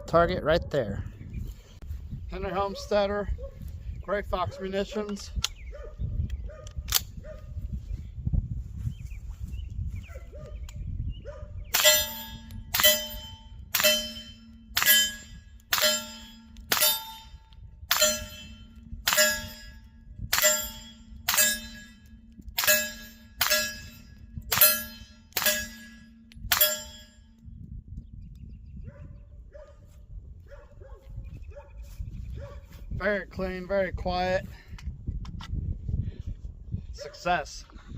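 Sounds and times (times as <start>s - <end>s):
suppressed gunshots with metallic ring: 11.7s - 27.3s.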